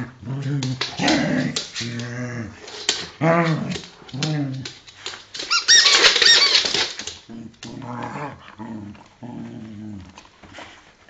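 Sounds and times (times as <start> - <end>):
dog growling: 0.0 - 4.7, 7.3 - 10.2
rubber squeaky toy squeaking: 5.5 - 6.7.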